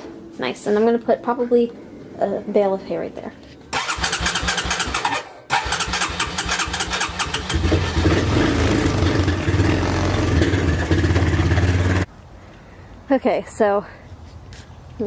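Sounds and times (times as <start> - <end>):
engine starter cranking: 3.7 - 12.0
engine idling: 3.8 - 12.1.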